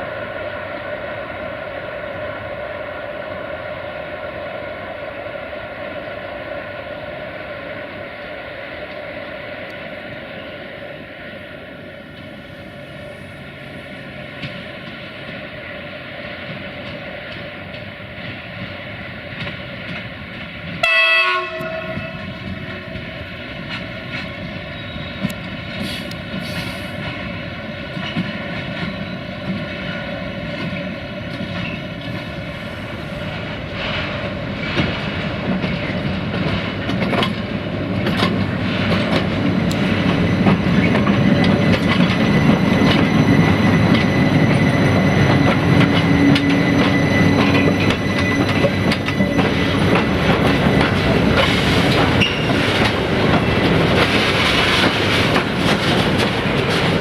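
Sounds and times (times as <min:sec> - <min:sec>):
locomotive humming: 0:00.0 - 0:57.0
train horn blast: 0:20.8 - 0:22.4
wheels clattering over rail joints: 0:33.7 - 0:57.0.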